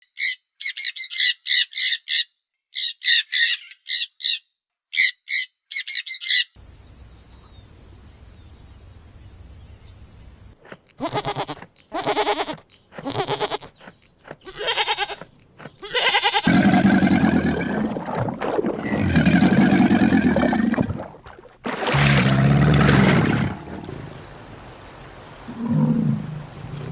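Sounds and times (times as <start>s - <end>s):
pitched animal calls: 10.9s - 17.2s
loud low drawn-out calls: 23.9s - 26.9s.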